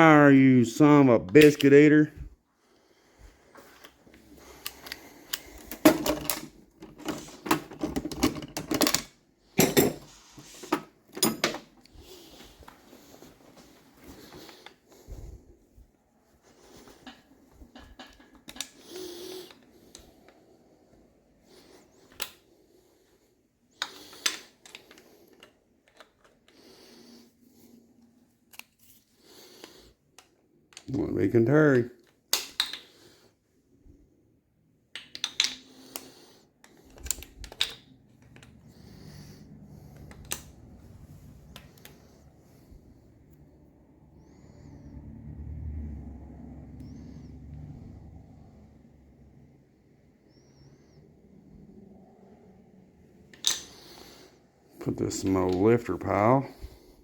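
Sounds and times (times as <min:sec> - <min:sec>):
metal engine parts clattering: 0:05.6 - 0:11.8
metal parts and tools clicking: 0:34.9 - 0:38.6, 0:53.3 - 0:53.8.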